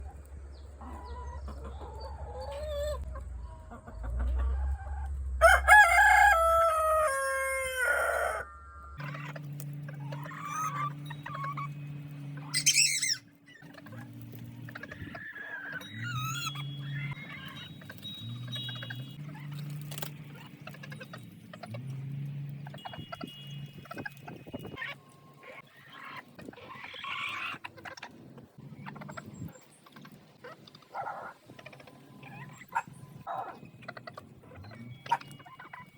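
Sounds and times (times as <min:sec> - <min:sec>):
chickens clucking: 0:00.0 - 0:35.9
rooster crowing: 0:05.4 - 0:09.3
sharp high squawk: 0:12.5 - 0:13.3.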